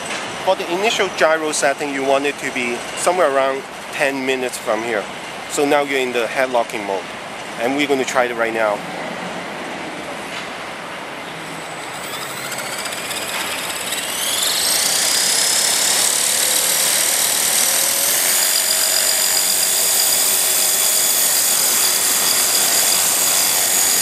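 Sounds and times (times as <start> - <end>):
electric motor whine: 11.3 - 24.0.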